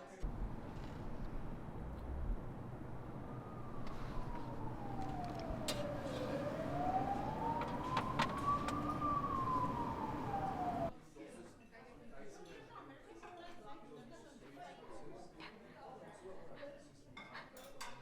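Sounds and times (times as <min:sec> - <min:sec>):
emergency siren wailing: 0:00.0 - 0:10.9
low rumble: 0:00.2 - 0:10.9.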